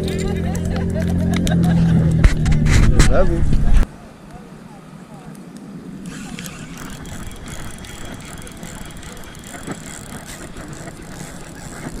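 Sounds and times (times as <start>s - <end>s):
background noise: 0.0s - 12.0s
fishing reel ticking: 6.1s - 12.0s.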